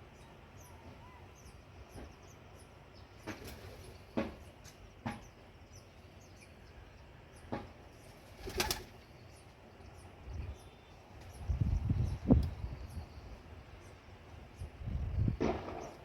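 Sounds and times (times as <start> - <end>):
faint high chirping: 0.0 - 4.0
bird wings flapping: 3.2 - 4.0, 8.1 - 9.0.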